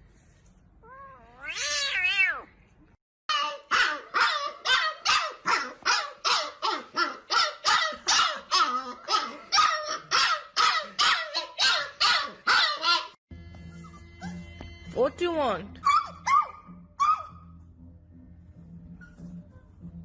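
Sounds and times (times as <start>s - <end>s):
dog barking rapidly: 3.3s - 13.2s, 15.8s - 17.4s.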